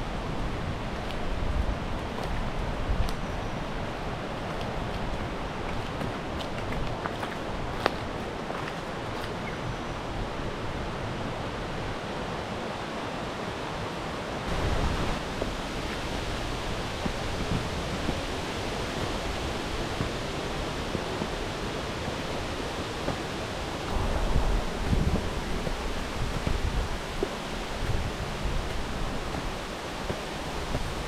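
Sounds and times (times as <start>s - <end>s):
river water rushing: 0.0s - 31.0s
low rumble: 23.8s - 27.2s.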